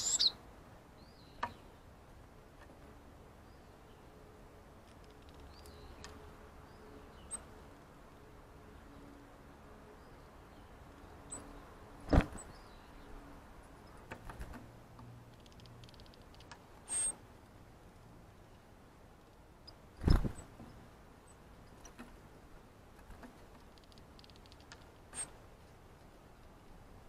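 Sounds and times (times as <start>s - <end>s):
faint high bird chirps: 0.0s - 0.4s, 15.4s - 17.2s
light clicks: 23.0s - 25.3s.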